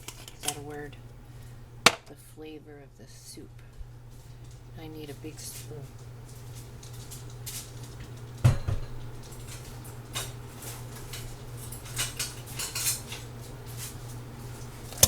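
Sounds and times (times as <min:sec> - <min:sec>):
steady low hum: 0:00.0 - 0:08.4, 0:13.3 - 0:15.0.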